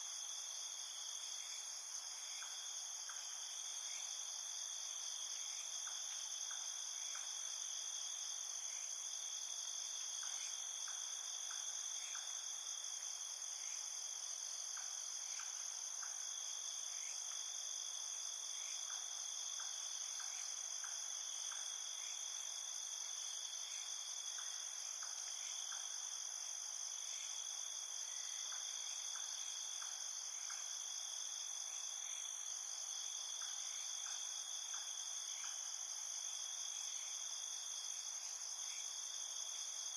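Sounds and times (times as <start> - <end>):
insect chirps in groups: 0.0 - 39.9.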